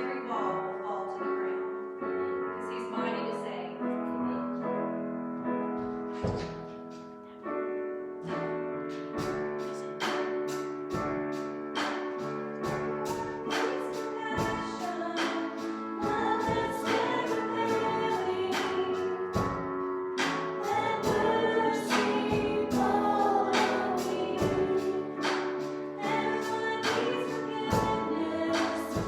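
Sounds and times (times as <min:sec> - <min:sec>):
worship band playing: 0:05.4 - 0:29.0
voices singing together: 0:12.6 - 0:19.6, 0:20.2 - 0:29.0.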